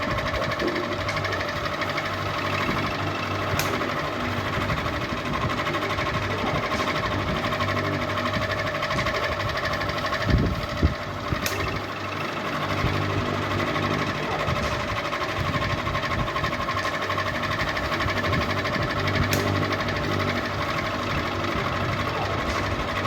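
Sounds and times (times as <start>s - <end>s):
ceiling fan humming and rattling: 0.0s - 23.0s.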